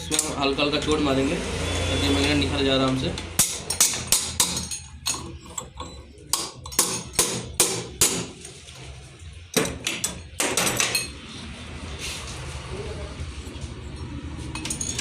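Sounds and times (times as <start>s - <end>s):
hammer tapping metal: 3.4s - 8.4s.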